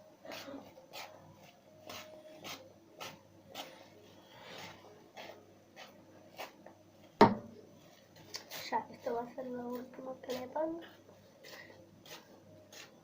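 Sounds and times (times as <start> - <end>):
rubbing or scratching strokes: 0.2 - 6.6, 7.8 - 13.0.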